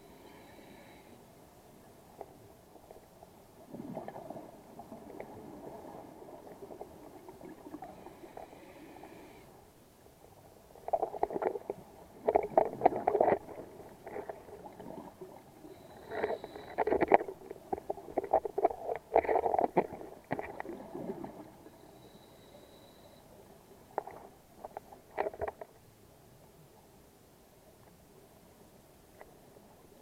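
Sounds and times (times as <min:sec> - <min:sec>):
bubbles gurgling underwater: 0:03.6 - 0:08.0.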